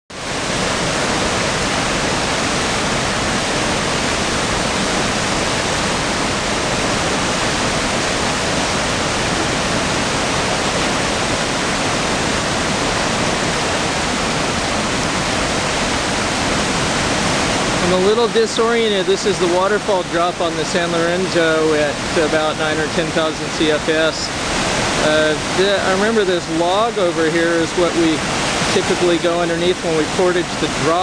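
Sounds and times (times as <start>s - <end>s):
whitewater rushing: 0.1s - 31.0s.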